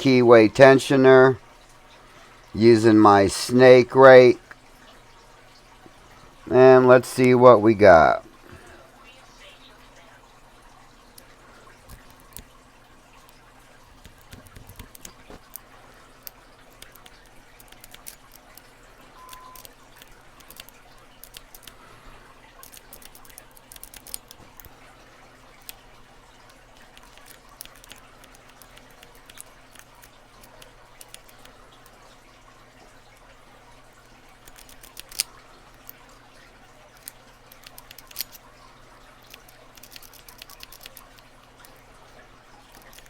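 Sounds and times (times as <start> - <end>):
small metallic lock clicks: 37.0 - 38.4.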